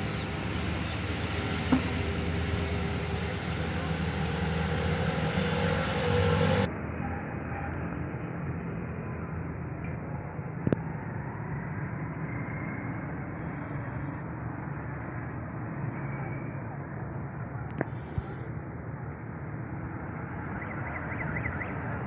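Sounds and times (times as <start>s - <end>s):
car interior hum: 0.0s - 6.7s.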